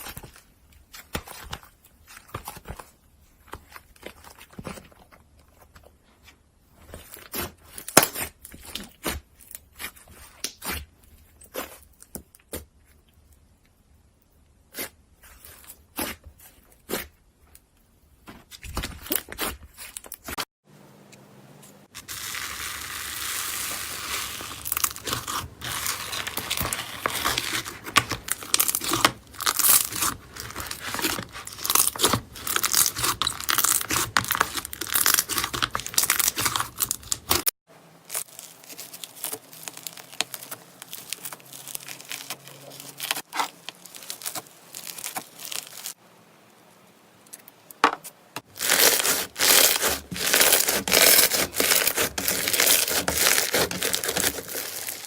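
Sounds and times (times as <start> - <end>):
slime crackling and popping: 22.0 - 37.5, 38.1 - 46.0, 48.5 - 55.0.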